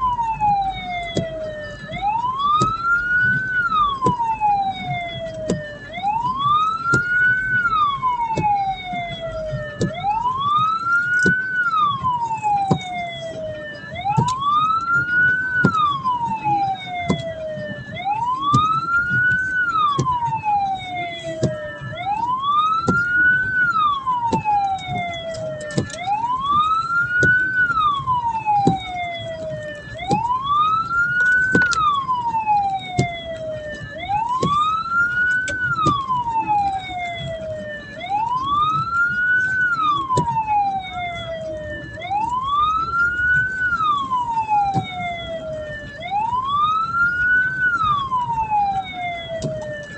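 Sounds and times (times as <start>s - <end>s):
siren wailing: 0.0s - 49.9s
vehicle engine and road rumble: 0.0s - 49.9s.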